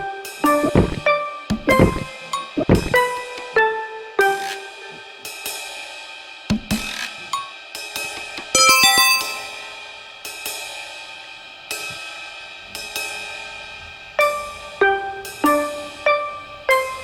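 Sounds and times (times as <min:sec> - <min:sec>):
music of struck ringing notes: 0:08.6 - 0:10.0.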